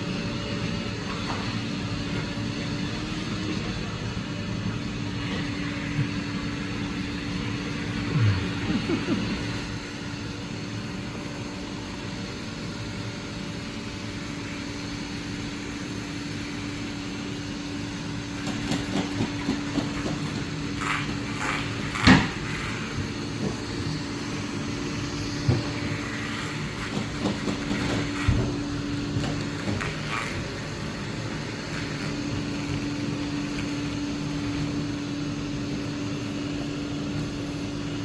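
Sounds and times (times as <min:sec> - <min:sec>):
robot vacuum motor hum: 0:04.6 - 0:12.1, 0:17.9 - 0:36.2.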